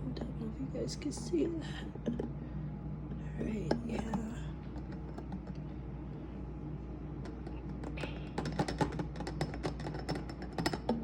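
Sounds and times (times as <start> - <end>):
clicks and taps against glass jar: 7.2 - 11.0.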